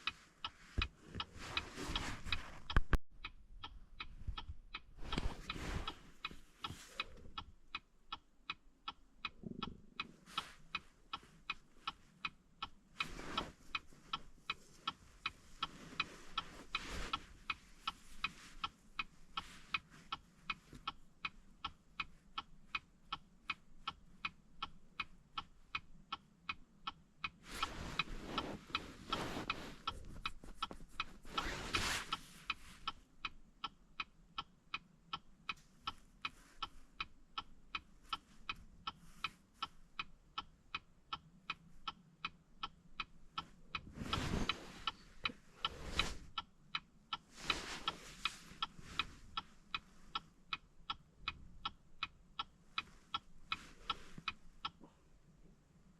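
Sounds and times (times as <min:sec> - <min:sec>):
handling and rustling noises: 0:00.0 - 0:03.0, 0:13.0 - 0:18.7, 0:27.4 - 0:32.9, 0:43.8 - 0:46.3, 0:47.3 - 0:49.4
turn signal ticking: 0:00.0 - 0:55.9.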